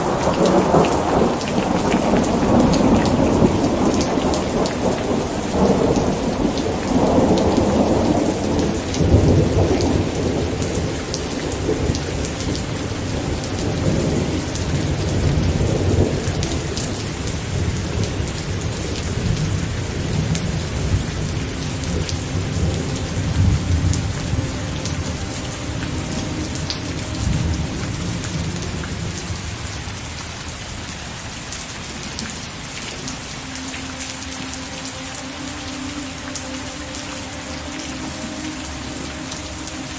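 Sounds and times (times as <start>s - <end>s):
thunder rumbling: 0.0s - 30.1s
steady rain falling: 0.0s - 39.9s.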